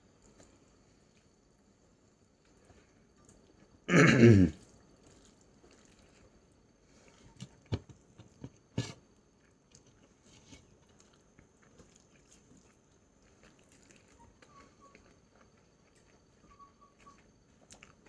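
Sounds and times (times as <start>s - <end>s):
person chewing: 4.5s - 18.0s.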